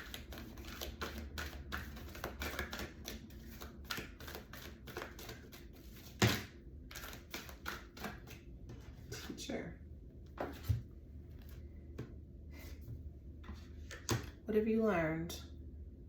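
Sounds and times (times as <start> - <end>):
cards being shuffled: 0.0 - 9.4.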